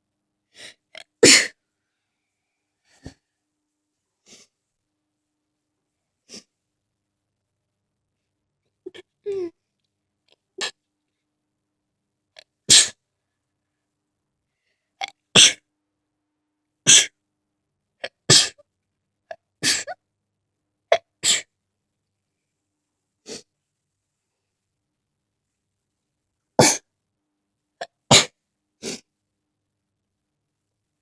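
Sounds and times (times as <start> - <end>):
person sneezing: 0.6 - 1.6, 12.7 - 13.0, 15.0 - 15.6, 16.9 - 17.1, 18.0 - 18.6, 19.6 - 20.0, 20.9 - 21.5, 26.6 - 26.8, 28.1 - 29.1.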